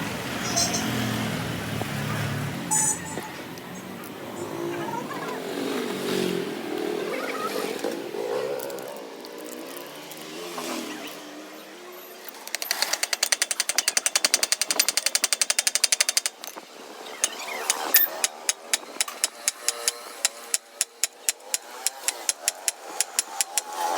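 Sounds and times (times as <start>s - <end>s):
fast sharp mechanical clicks: 12.3s - 23.9s.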